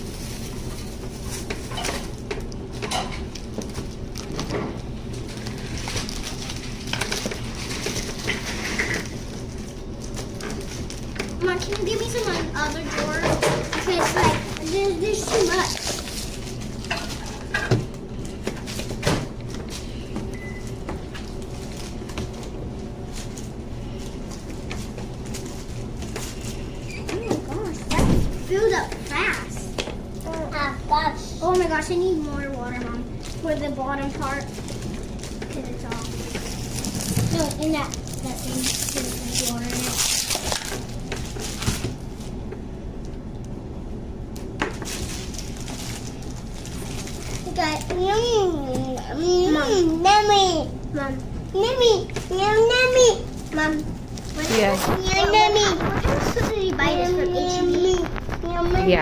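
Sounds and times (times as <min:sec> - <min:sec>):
steady low hum: 0:00.0 - 0:59.0
clicks and knocks of handled objects: 0:01.2 - 0:09.4.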